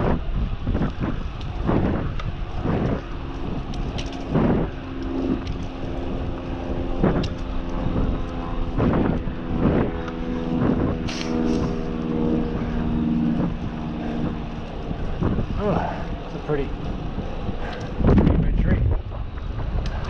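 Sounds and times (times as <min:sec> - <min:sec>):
steady low hum: 0:00.0 - 0:20.0
wind rushing over microphone: 0:00.0 - 0:20.0
hard breathing: 0:10.2 - 0:18.1.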